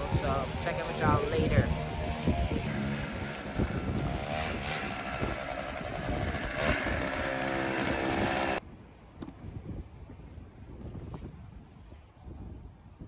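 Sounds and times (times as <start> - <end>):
street noise: 0.0 - 8.6
light wind: 0.0 - 13.0
motor vehicle engine running: 2.7 - 8.6.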